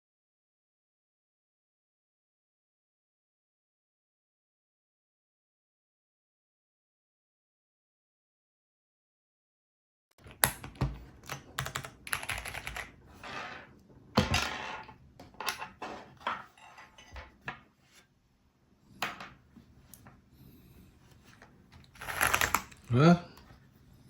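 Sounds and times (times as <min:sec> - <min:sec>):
keyboard switches clicking and scraping: 0:10.2 - 0:13.0, 0:21.8 - 0:22.9.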